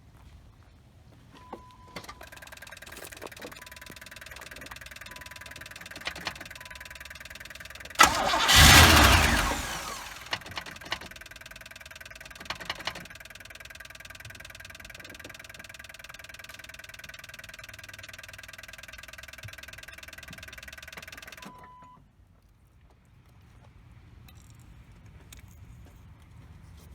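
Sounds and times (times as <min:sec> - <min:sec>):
car engine starting and running: 0:06.2 - 0:11.3.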